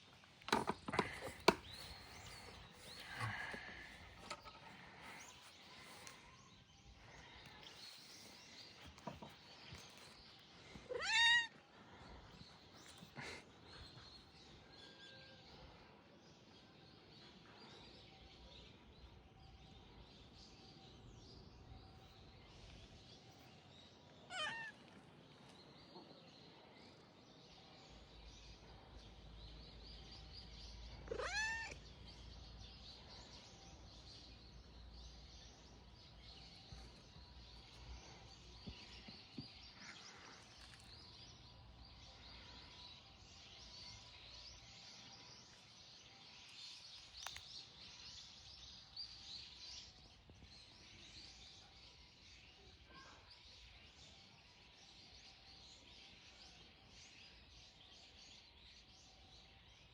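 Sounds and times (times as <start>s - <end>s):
cat meowing: 10.9s - 11.5s, 24.3s - 24.8s, 31.1s - 31.8s.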